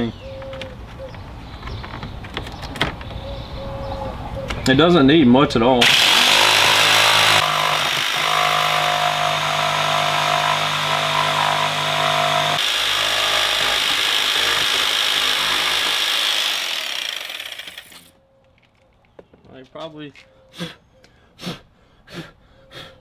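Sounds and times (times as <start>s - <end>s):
jigsaw cutting: 5.8s - 18.1s.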